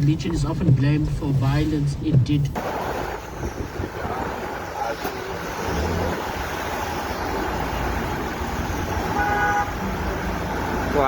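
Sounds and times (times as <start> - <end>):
storm wind on microphone: 2.6 - 5.0.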